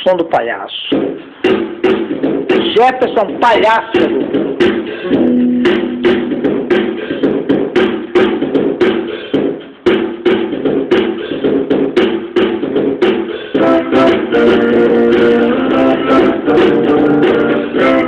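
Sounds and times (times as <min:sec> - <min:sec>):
guitar strumming: 0:05.1 - 0:06.7.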